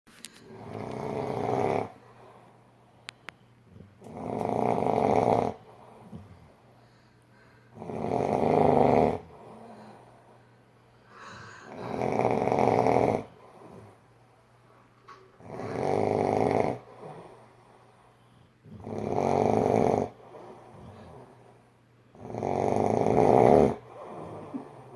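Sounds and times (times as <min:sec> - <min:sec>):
quiet breathing: 0:00.2 - 0:04.5, 0:05.2 - 0:08.0, 0:08.6 - 0:15.8, 0:16.7 - 0:18.9, 0:20.0 - 0:21.8, 0:23.6 - 0:24.9
person snoring loudly: 0:00.5 - 0:02.0, 0:04.0 - 0:05.7, 0:07.7 - 0:09.9, 0:11.2 - 0:13.9, 0:15.4 - 0:17.4, 0:18.7 - 0:21.2, 0:22.2 - 0:24.9.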